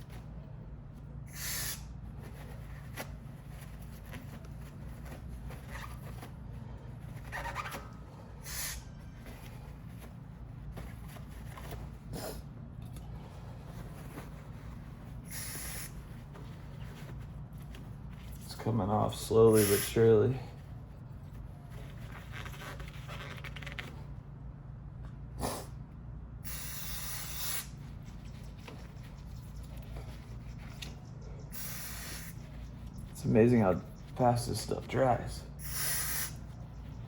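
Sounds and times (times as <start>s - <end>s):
steady low hum: 0.0s - 37.0s
aerosol spray hissing: 1.3s - 1.9s, 15.3s - 16.0s, 19.5s - 20.0s, 26.4s - 27.8s, 31.5s - 32.4s, 35.6s - 36.4s.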